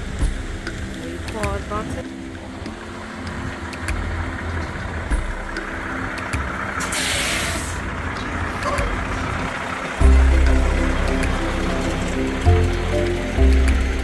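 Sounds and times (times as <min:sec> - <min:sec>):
background music: 0:00.0 - 0:14.0
truck engine running: 0:00.0 - 0:14.0
air brake hiss: 0:06.8 - 0:07.8.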